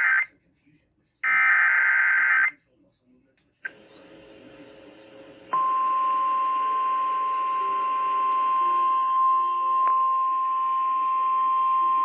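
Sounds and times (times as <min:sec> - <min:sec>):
high-pitched alarm beep: 0:05.6 - 0:12.0.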